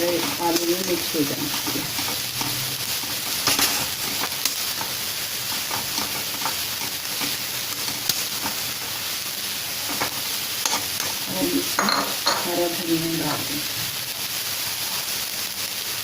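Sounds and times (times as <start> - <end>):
utensil scraping a pan: 0.0 - 9.0
food sizzling in a pan: 0.0 - 16.0.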